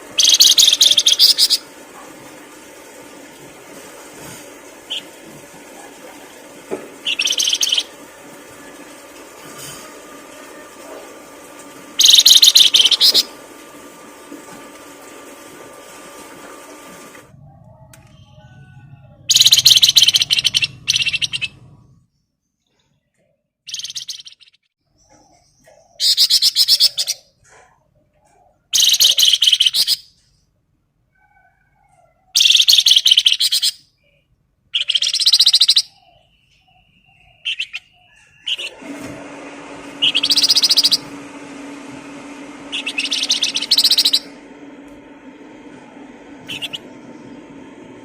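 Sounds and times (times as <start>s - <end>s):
songbird singing: 0.2s - 1.7s, 7.0s - 8.0s, 12.0s - 13.3s, 18.0s - 21.6s, 32.4s - 38.7s, 40.0s - 41.1s, 42.8s - 44.3s.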